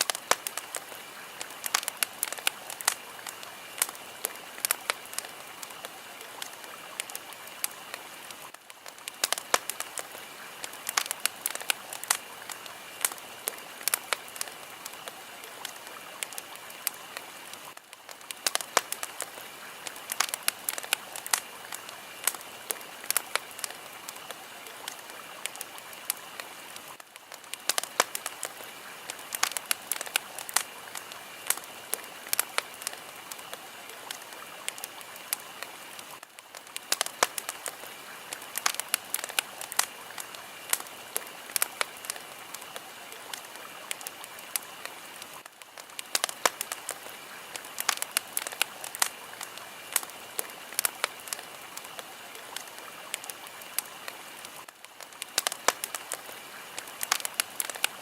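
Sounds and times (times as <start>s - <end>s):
fire crackling with pops: 0.0s - 58.0s.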